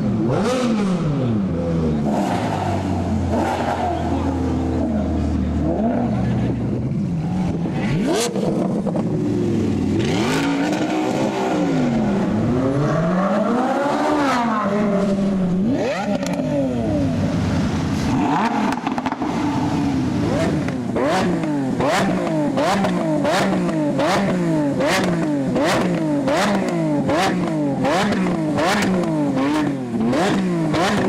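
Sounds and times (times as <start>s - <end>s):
car engine revving: 0.0s - 31.0s
exhaust cracks: 13.7s - 31.0s.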